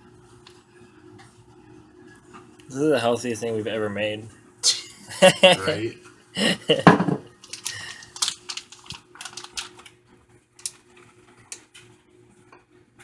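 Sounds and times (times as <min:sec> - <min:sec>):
faint steady hum: 0:00.0 - 0:13.0
person speaking: 0:04.6 - 0:07.1.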